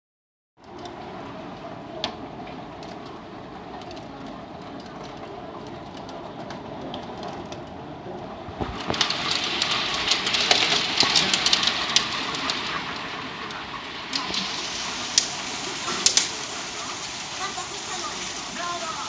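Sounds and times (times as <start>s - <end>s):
hail and rain pelting: 0.9s - 19.0s
hailstones cracking on hard surfaces: 8.5s - 19.0s.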